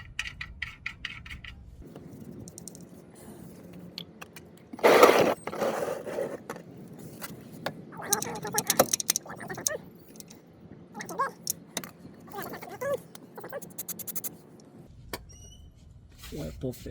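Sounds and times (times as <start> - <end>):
ratchet wrench clicking: 13.6 - 14.3.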